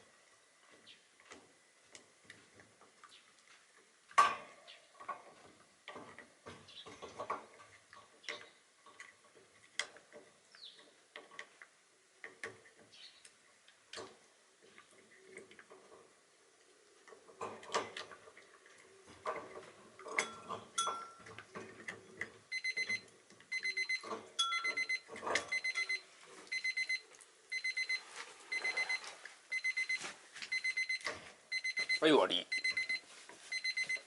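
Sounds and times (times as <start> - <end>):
electronic alarm beeping: 22.5 - 34.0.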